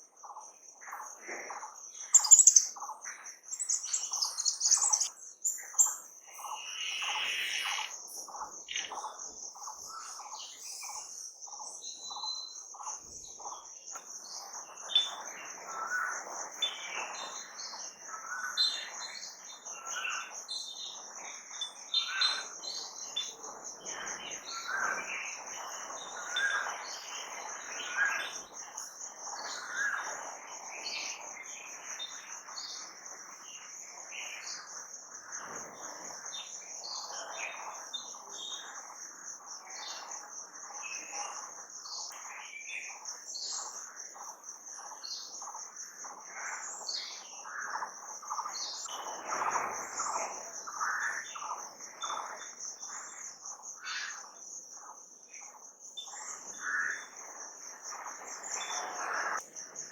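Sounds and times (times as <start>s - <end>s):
songbirds chirping: 0.0s - 59.9s
high-pitched insect drone: 0.2s - 13.6s.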